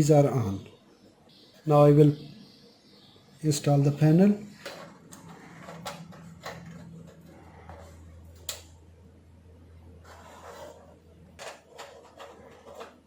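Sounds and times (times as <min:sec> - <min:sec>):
faint low hum: 0:00.0 - 0:13.0
clicks and knocks of parts handled: 0:04.5 - 0:08.7, 0:11.4 - 0:13.0.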